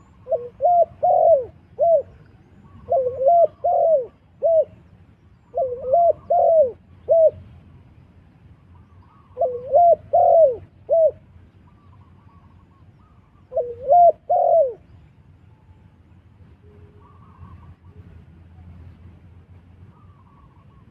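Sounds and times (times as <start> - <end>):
dove cooing: 0.0 - 4.8, 5.5 - 7.4, 9.0 - 14.9, 16.8 - 18.1.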